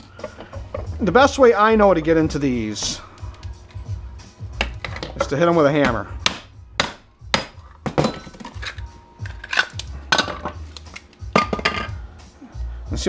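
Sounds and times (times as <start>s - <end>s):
hammer striking plastic casing: 4.6s - 10.6s.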